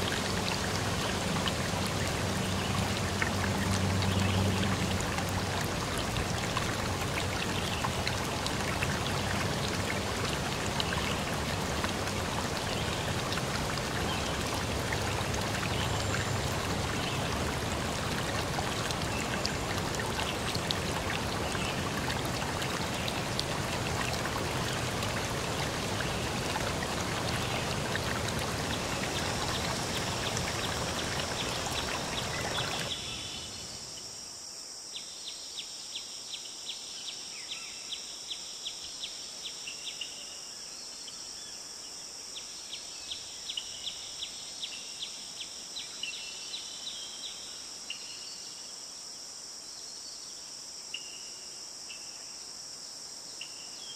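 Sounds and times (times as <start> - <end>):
flowing water rushing: 0.0 - 34.0.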